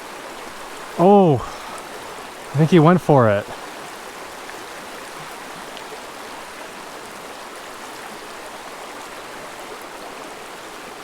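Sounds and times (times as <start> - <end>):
creek water flowing: 0.0 - 11.0.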